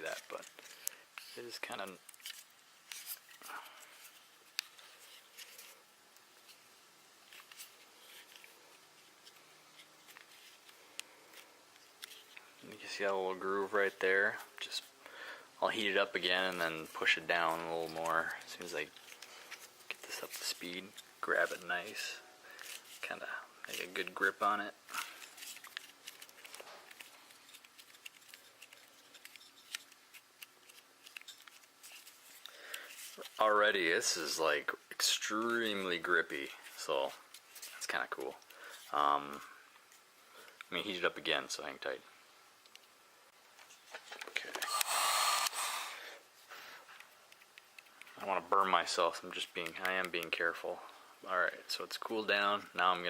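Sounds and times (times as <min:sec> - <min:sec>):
soft handling rustles: 0:00.0 - 0:42.0.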